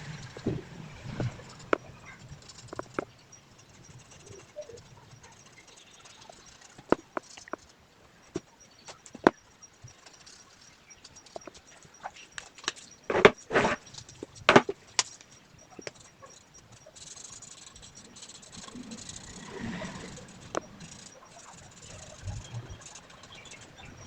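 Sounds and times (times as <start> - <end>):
scratchy strokes on paper: 13.1 - 14.7.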